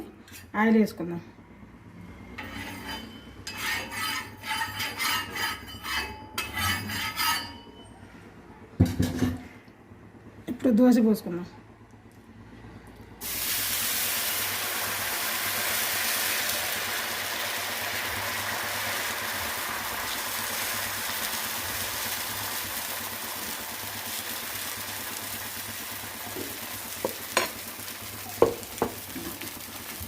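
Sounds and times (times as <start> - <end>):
batter sizzling on a griddle: 2.4 - 7.5, 13.2 - 30.0.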